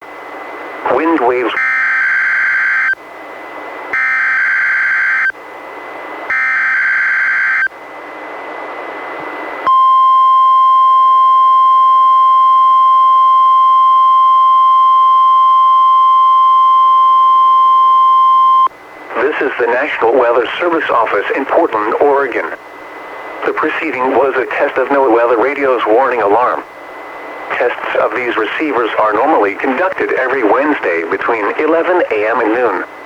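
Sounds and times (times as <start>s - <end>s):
steady warning alarm tone: 0.6s - 3.0s, 3.9s - 7.8s, 9.6s - 18.8s.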